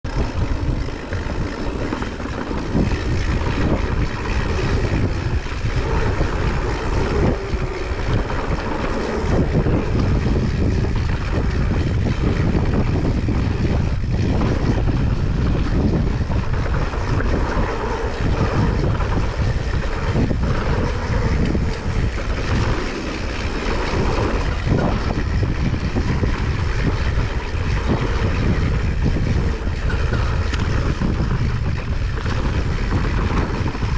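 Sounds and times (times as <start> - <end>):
wind blowing against microphone: 0.0 - 33.9.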